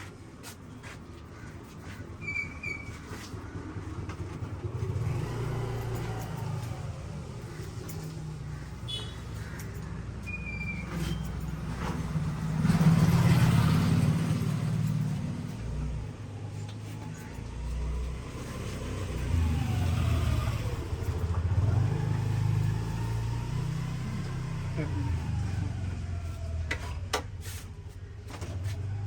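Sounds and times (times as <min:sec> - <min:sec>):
vehicle engine rumbling: 0:00.0 - 0:29.0.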